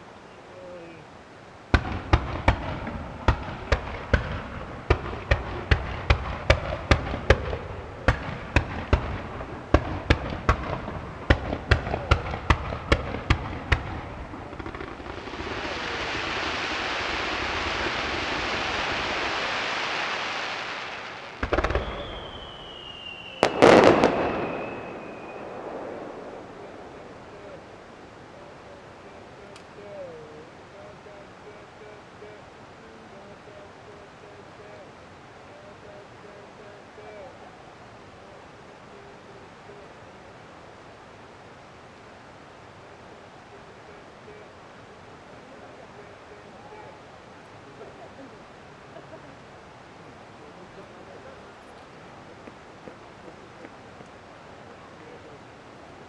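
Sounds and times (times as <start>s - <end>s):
steady hiss: 0.0s - 56.0s
whistling firework tone: 1.8s - 30.0s
firework shell bursts: 14.6s - 25.6s.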